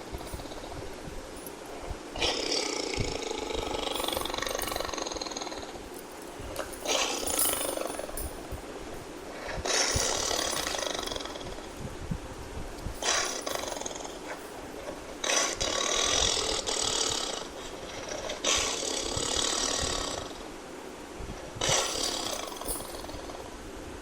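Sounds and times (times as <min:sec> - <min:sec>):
tiger growling: 0:02.2 - 0:08.2, 0:09.4 - 0:11.7, 0:13.0 - 0:20.4.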